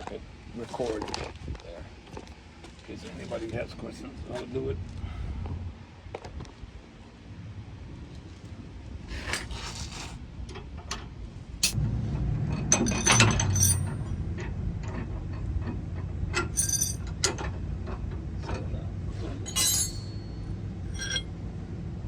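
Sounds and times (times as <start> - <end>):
low steady rumble: 0.0 - 22.0
metal tools clinking: 12.6 - 14.1, 16.3 - 17.5, 19.4 - 21.3.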